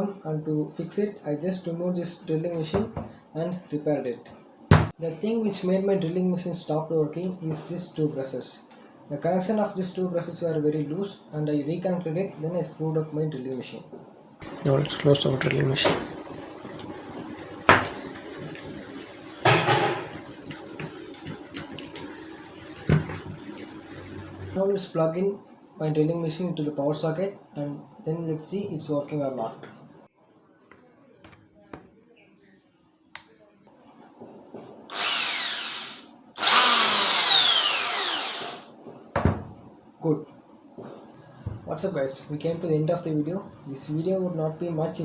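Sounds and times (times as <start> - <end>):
electric drill motor whine: 34.9 - 38.7.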